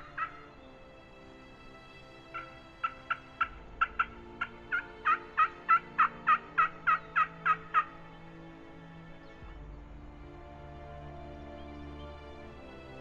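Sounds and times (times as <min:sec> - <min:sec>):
faint background music: 0:00.0 - 0:13.0
turkey hen yelps: 0:03.8 - 0:07.9.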